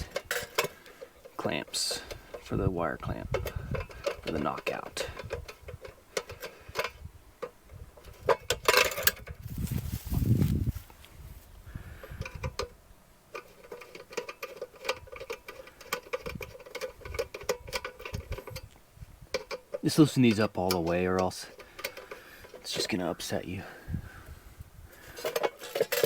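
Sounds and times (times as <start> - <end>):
metal clatter: 0.0 - 10.5, 13.3 - 18.7, 19.3 - 23.8, 25.0 - 26.0
handling noise: 0.0 - 12.7.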